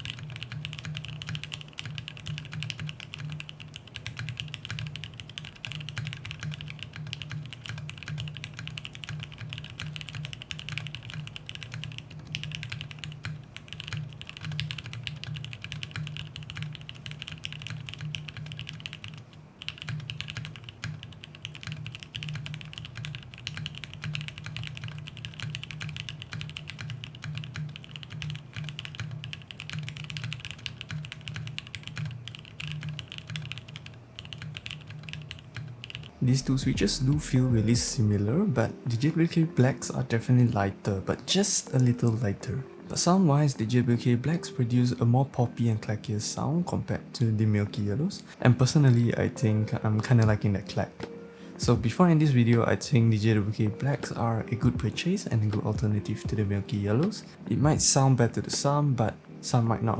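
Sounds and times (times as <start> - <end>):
fast mechanical keyboard typing: 0.0 - 59.9.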